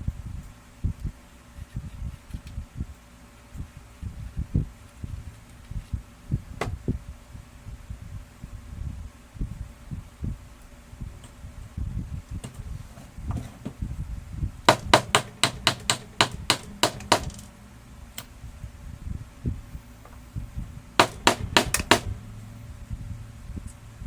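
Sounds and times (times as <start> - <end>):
tapping on hard object: 14.7 - 17.5, 21.0 - 22.1.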